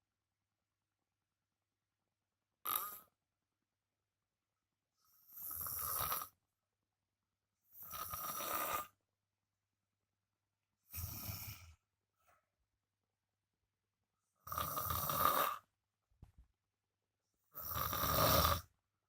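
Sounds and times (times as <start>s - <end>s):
man snoring loudly: 5.3s - 6.3s, 7.9s - 8.9s, 14.4s - 15.6s, 17.6s - 18.7s.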